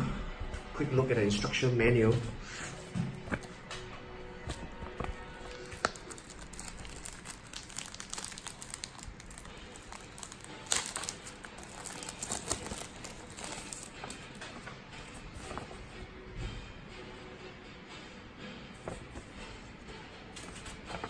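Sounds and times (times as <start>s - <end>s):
paper pages rustling: 2.8s - 3.8s, 4.4s - 16.0s, 18.8s - 19.4s, 20.3s - 21.0s
sharp paper crackle: 4.5s - 14.6s.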